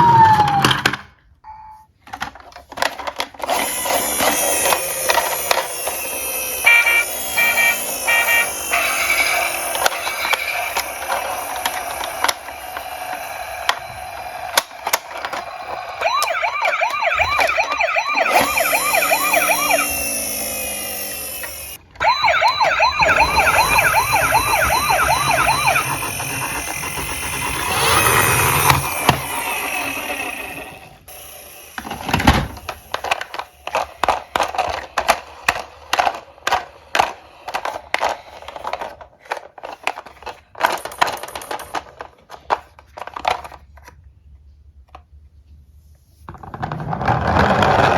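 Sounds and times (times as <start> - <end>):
siren warbling: 6.6 - 14.2, 15.6 - 33.3.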